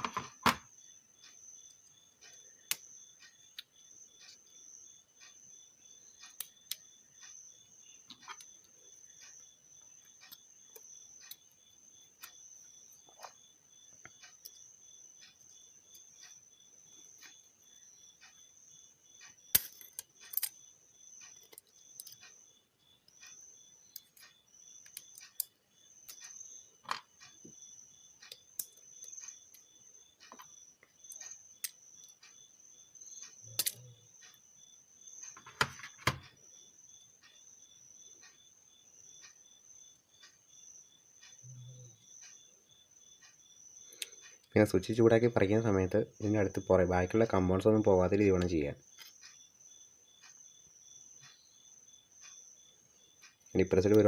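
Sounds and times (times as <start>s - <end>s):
insects chirping trill: 0.0s - 54.0s
small clicks and taps: 6.2s - 11.5s, 13.0s - 14.6s, 21.2s - 22.4s, 23.0s - 27.6s, 28.2s - 32.4s.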